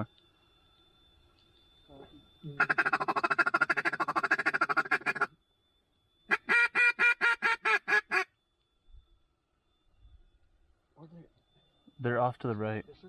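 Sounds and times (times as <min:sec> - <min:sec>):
duck call quacks: 0:02.6 - 0:05.3, 0:06.3 - 0:08.3
duck call rattling chatter: 0:02.6 - 0:05.3, 0:06.3 - 0:08.3.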